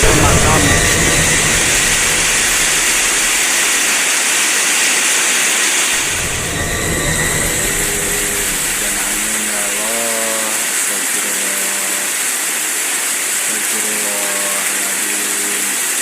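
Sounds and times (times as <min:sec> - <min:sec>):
faint wavering tones: 0:00.0 - 0:03.8, 0:06.0 - 0:09.9
wind: 0:00.0 - 0:13.9
heavy rain: 0:00.0 - 0:16.0.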